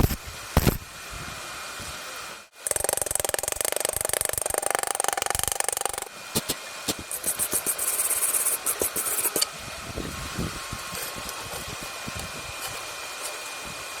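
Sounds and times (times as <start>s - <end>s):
welding arc crackling and sizzling: 0.0s - 0.8s.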